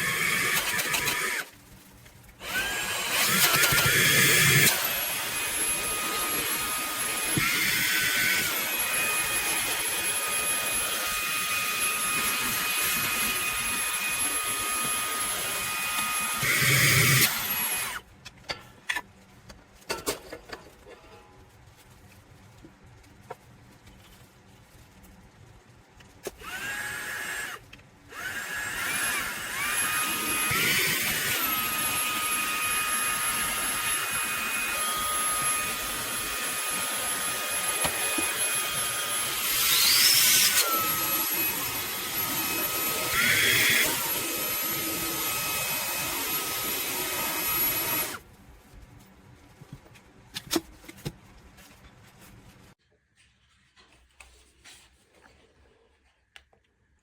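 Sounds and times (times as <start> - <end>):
handheld vacuum whining: 0.0 - 1.5, 2.4 - 18.0, 26.2 - 48.2.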